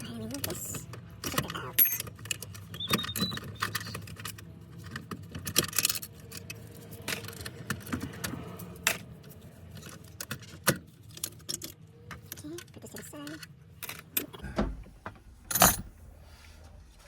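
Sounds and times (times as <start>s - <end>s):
low steady hum: 0.0s - 17.0s
metal tools clinking: 1.3s - 2.6s, 15.4s - 16.0s.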